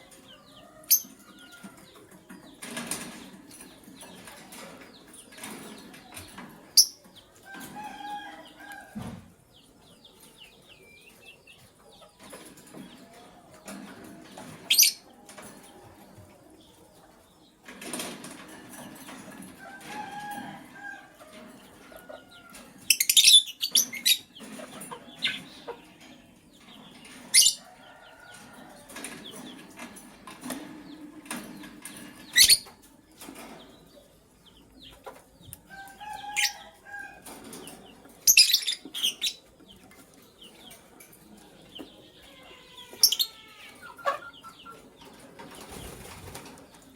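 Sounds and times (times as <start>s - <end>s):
lovebirds chirping: 30.5s - 46.4s
wings fluttering and rustling: 45.0s - 46.9s.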